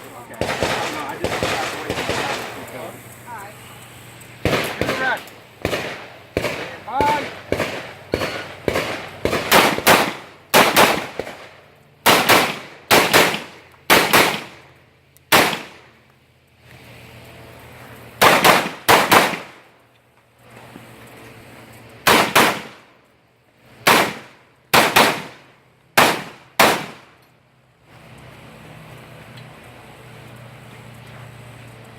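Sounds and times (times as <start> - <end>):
rifle shots: 0.4 - 2.7, 4.4 - 14.6, 15.3 - 15.9, 18.2 - 19.7, 22.0 - 22.9, 23.8 - 27.2.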